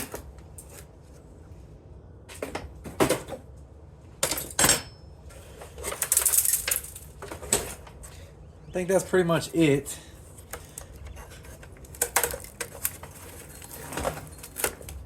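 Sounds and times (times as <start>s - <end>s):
metal scrap parts clinking: 5.8s - 7.8s.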